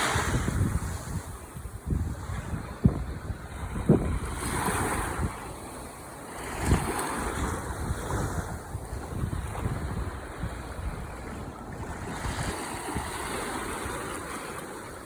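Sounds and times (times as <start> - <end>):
ocean waves washing on shore: 0.0 - 15.0
wind buffeting microphone: 0.0 - 15.0.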